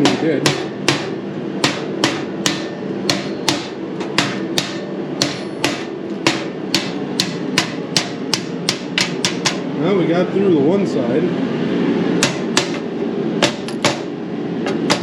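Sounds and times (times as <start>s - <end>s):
hammer striking steel: 0.0s - 9.7s, 12.2s - 14.1s, 14.7s - 15.0s.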